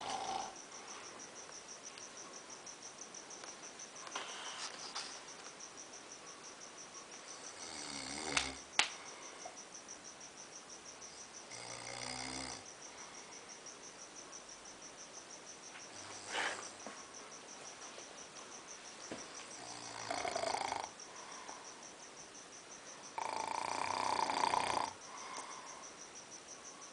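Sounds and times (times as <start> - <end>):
person snoring: 0.0 - 0.6, 7.5 - 8.6, 11.5 - 12.7, 16.0 - 16.7, 19.6 - 20.9, 23.2 - 25.7.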